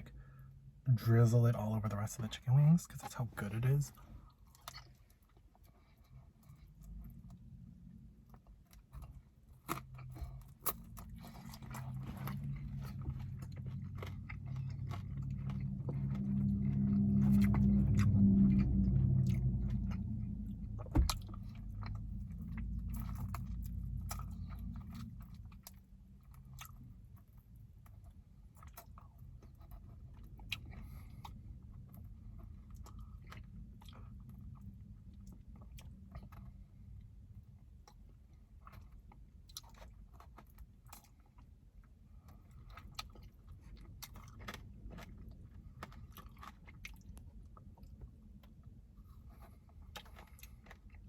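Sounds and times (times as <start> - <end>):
person chewing chicken wings: 4.2 - 51.0.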